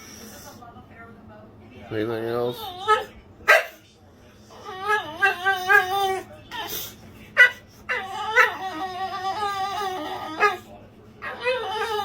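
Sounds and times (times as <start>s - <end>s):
dog whining: 2.6s - 3.2s, 4.5s - 12.0s
dog yipping: 2.6s - 3.8s, 4.6s - 6.7s, 7.4s - 12.0s.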